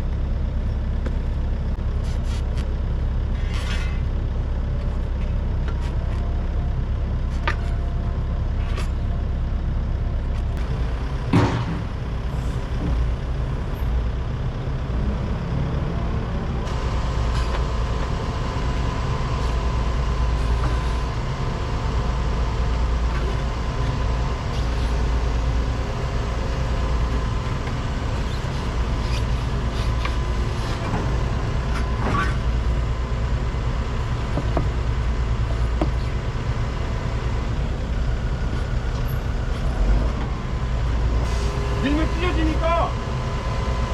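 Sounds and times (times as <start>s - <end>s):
excavator diesel engine running: 0.0s - 43.9s
steady whine: 10.0s - 43.9s.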